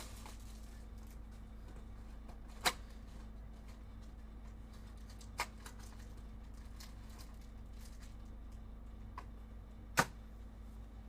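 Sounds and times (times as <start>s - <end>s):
card packs tapping and rustling: 0.0s - 0.7s
steady low hum: 0.0s - 11.0s.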